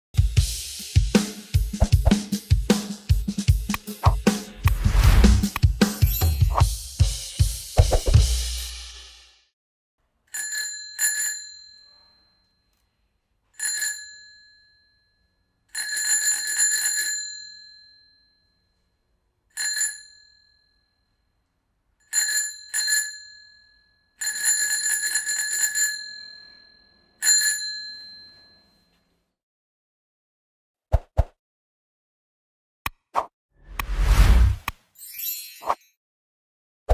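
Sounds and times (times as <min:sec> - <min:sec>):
bicycle bell ringing: 0:10.3 - 0:12.6, 0:13.6 - 0:18.4, 0:22.1 - 0:28.8.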